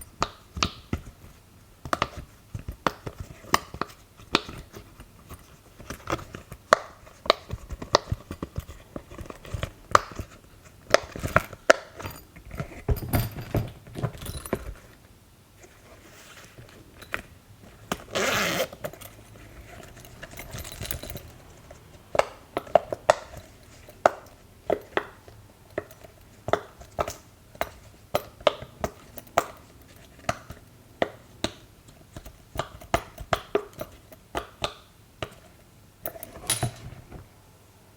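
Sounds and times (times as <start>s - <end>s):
handling rustle: 2.1s - 22.1s.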